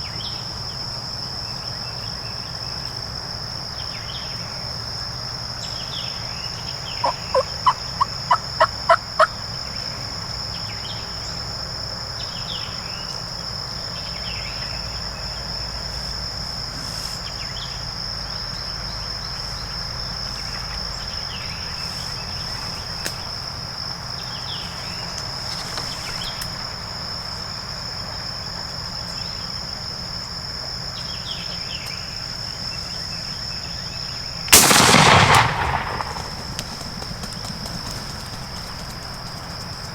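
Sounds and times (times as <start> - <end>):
turkey yelps: 7.0 - 9.3
shotgun blast with echo: 34.5 - 37.4.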